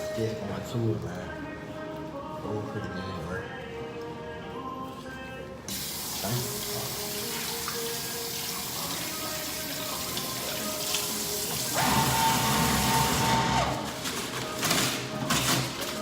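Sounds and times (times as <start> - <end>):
tap water running into sink: 5.7 - 13.2.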